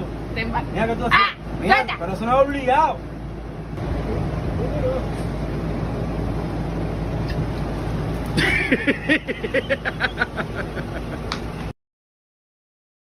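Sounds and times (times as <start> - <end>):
low rumble of car cabin: 0.0 - 11.7
rising pitched sweep: 3.8 - 7.5.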